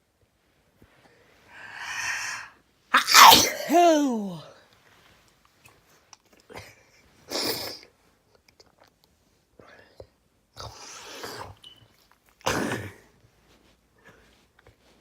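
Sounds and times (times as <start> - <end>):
person sneezing: 1.8 - 4.5.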